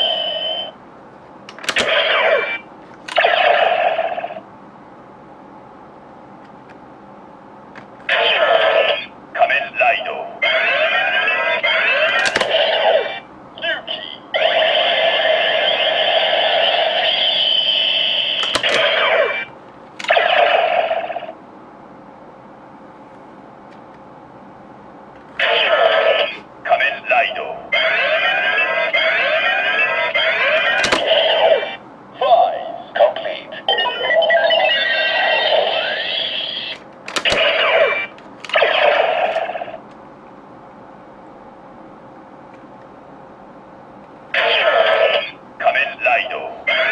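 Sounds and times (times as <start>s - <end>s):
toy electronic sound effects: 1.6s - 4.4s, 14.4s - 21.3s, 27.8s - 31.7s, 33.9s - 39.7s
plastic clicks of toy mechanism: 12.1s - 12.5s
toy belt electronic sound effects: 14.4s - 21.3s, 29.1s - 31.7s.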